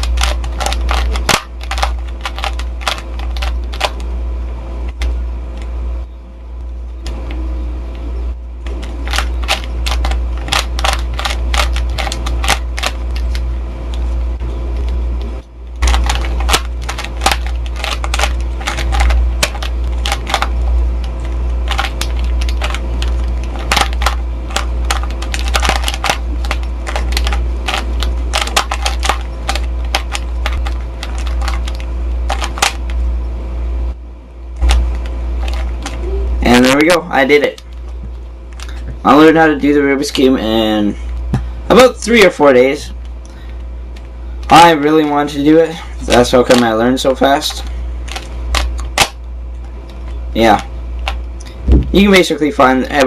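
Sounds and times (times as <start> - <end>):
low rumble: 47.7 - 52.2.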